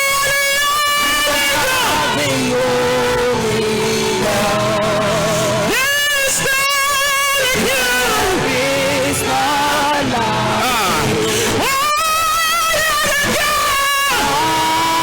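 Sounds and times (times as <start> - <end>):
person singing with vibrato: 0.0 - 15.0
sustained accompaniment chords: 0.8 - 11.6.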